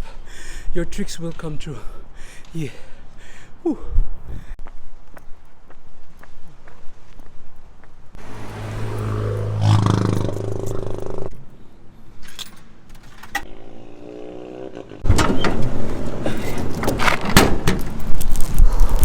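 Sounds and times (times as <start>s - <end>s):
vehicle passing: 8.2s - 11.3s.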